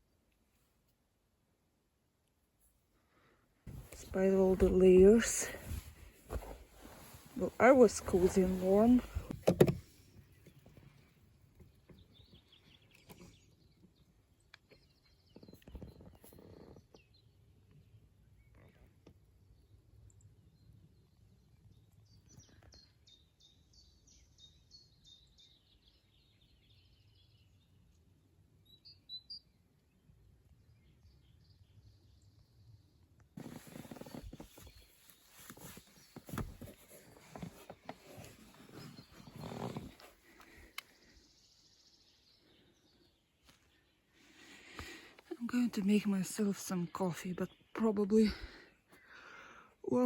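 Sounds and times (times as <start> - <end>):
songbird chirping: 3.7 - 9.7, 10.3 - 50.0
rustling: 3.7 - 11.1, 33.4 - 41.1.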